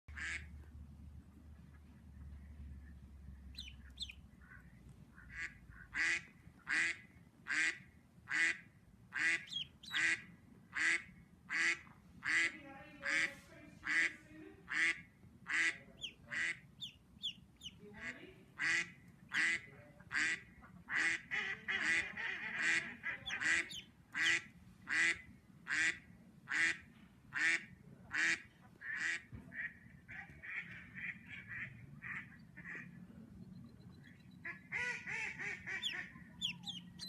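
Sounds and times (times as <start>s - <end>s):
duck quacking: 0.1s - 0.6s, 3.5s - 26.8s, 27.4s - 32.9s, 34.4s - 37.0s
faint high peeps: 3.5s - 4.2s, 9.4s - 10.0s, 16.8s - 17.8s, 35.8s - 37.0s.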